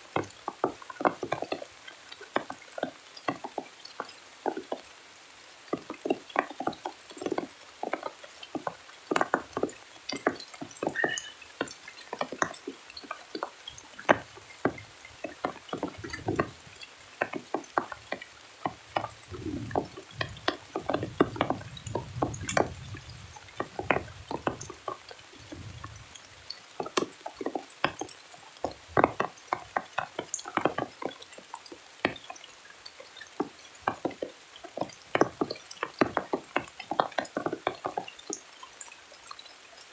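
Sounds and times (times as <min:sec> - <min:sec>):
rain on a tent: 0:00.0 - 0:39.9
low rumble: 0:18.8 - 0:26.6.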